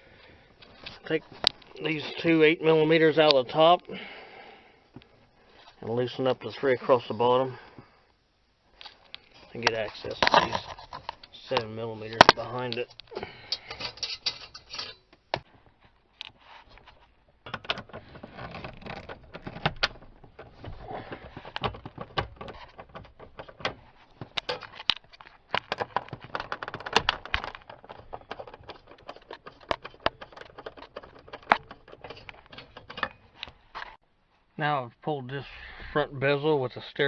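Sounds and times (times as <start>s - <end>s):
tools and bolts clicking on plastic: 9.1s - 15.5s, 17.4s - 34.0s.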